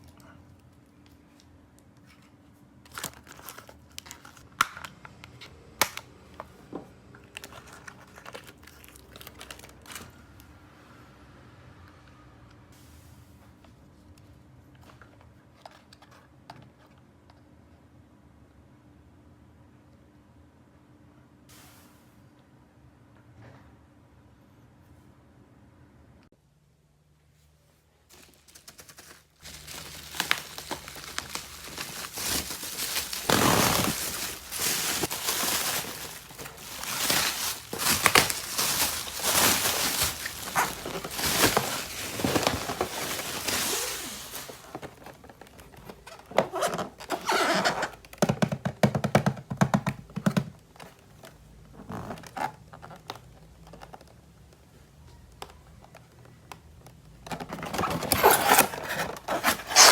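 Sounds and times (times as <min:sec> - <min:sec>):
packaging rustling: 0:02.9 - 0:04.5, 0:07.2 - 0:10.1, 0:28.1 - 0:47.9, 0:57.3 - 0:59.9.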